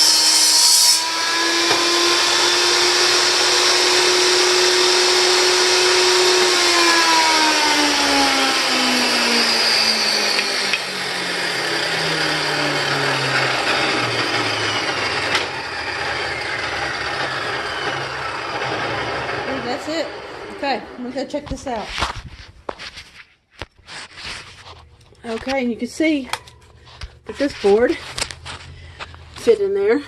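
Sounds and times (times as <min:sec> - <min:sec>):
table saw winding down: 0:00.0 - 0:21.4.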